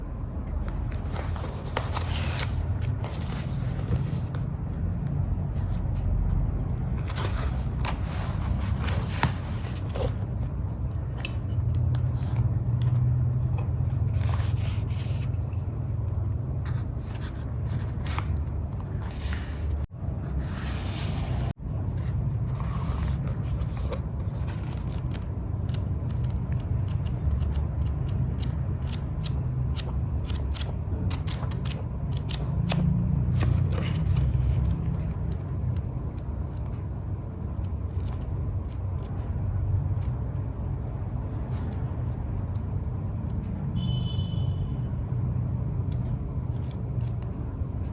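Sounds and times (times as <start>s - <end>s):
paper rustling and scraping: 0.6s - 4.5s, 6.8s - 13.0s, 14.0s - 15.6s, 16.6s - 25.2s.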